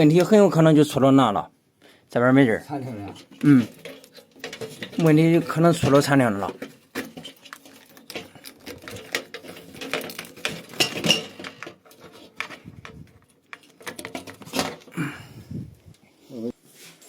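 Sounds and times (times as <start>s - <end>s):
objects clicking and clattering: 2.8s - 16.0s.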